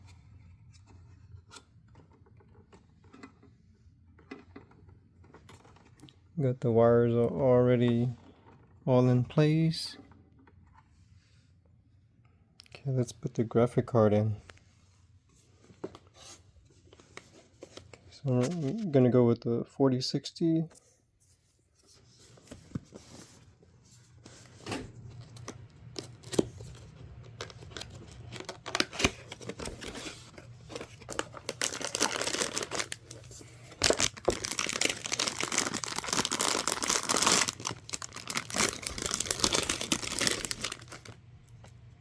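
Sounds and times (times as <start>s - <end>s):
packaging clicks and rustles: 24.4s - 41.8s
packaging crinkling and tearing: 25.1s - 41.6s.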